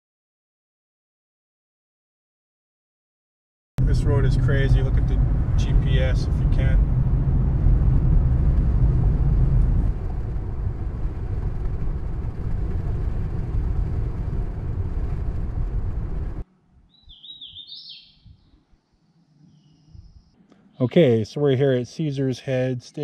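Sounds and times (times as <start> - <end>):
car road noise and engine rumble: 3.8 - 16.4
bird chirping: 16.9 - 20.9.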